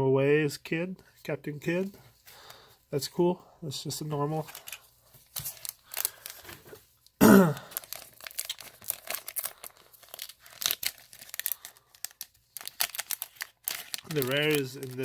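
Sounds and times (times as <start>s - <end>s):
foil wrapper tearing and crinkling: 4.5s - 6.8s, 7.5s - 15.0s.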